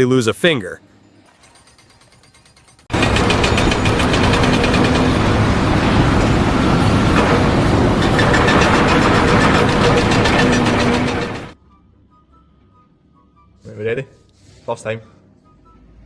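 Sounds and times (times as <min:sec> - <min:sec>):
loud machinery with fast rattle: 0:01.5 - 0:11.6.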